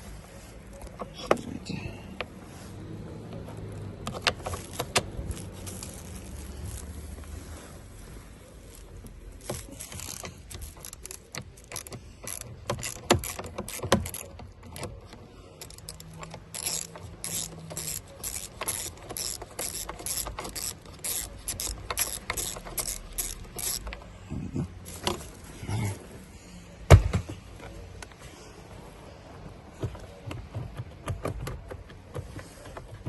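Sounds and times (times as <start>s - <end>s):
hand ratchet clicking: 4.0s - 7.1s, 8.7s - 24.1s.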